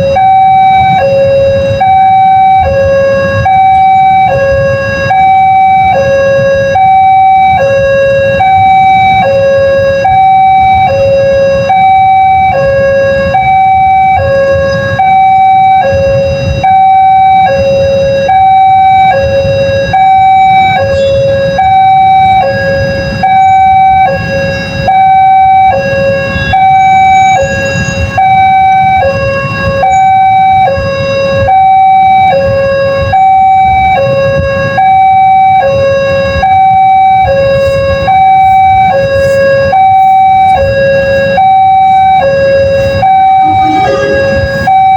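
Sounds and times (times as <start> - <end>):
two-tone level crossing siren: 0.0 - 44.9
low rumble: 42.2 - 44.9.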